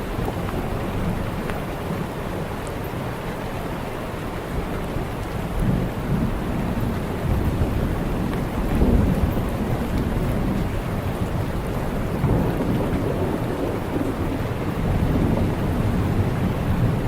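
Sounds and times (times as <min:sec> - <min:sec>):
steady rain falling: 0:00.0 - 0:17.0
low rumble of thunder: 0:04.4 - 0:17.0.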